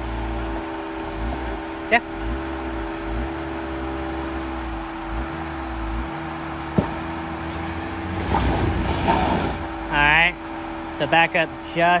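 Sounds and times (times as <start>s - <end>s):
pickup engine idling: 0.0s - 12.0s
sharp knock: 6.8s - 7.1s.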